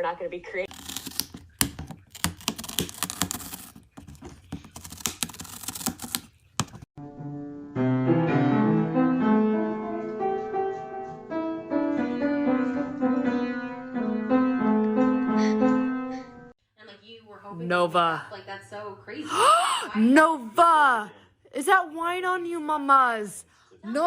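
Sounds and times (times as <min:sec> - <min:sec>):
piano music: 0:07.0 - 0:16.5.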